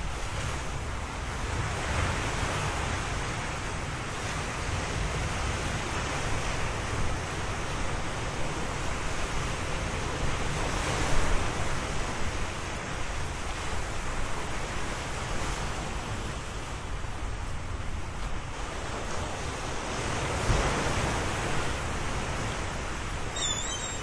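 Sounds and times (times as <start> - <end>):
ocean surf rushing: 18.6 - 24.0.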